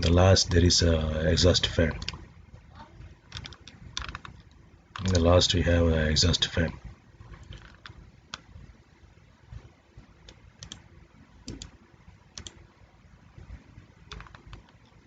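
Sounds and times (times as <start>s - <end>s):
computer keys clicking: 2.0s - 2.2s, 3.3s - 5.3s, 10.2s - 12.6s, 14.1s - 15.0s.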